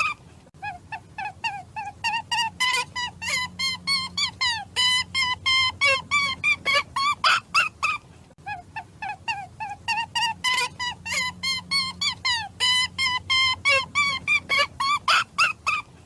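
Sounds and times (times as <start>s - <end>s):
animal squeaking calls: 0.0s - 16.0s.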